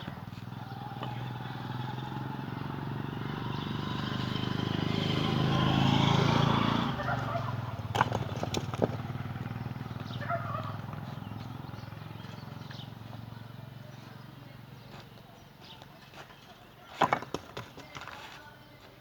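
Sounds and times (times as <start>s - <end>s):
vehicle engine passing by: 0.0s - 15.0s.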